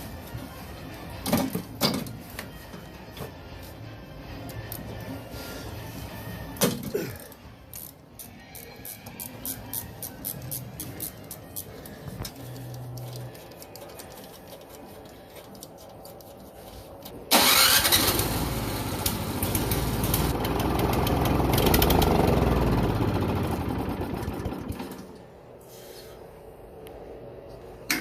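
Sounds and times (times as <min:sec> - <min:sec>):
engine starting with rising whine: 0:17.3 - 0:25.2
snowblower engine cranking: 0:17.3 - 0:25.2.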